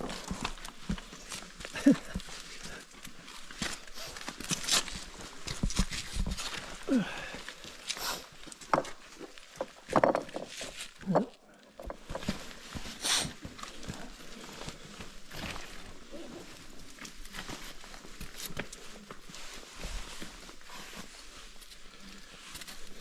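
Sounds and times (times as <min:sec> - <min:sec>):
footsteps on loose rock: 0:00.0 - 0:16.0
stones knocking together: 0:08.5 - 0:12.5.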